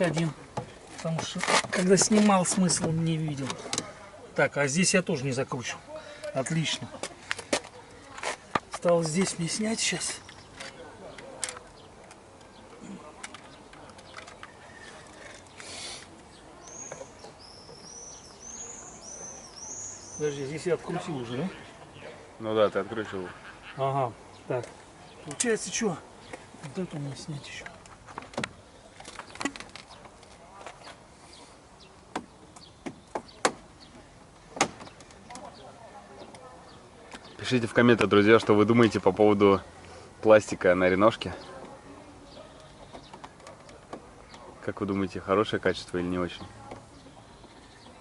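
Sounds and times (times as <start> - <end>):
scraping rustle: 0.0 - 2.8
bird chirping: 9.0 - 30.1, 30.8 - 34.1, 41.0 - 48.0.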